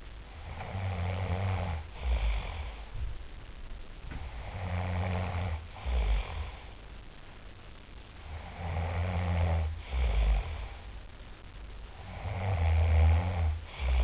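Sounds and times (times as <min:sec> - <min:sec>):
person snoring: 0:00.3 - 0:02.9, 0:04.2 - 0:06.8, 0:08.2 - 0:10.9, 0:12.0 - 0:14.0.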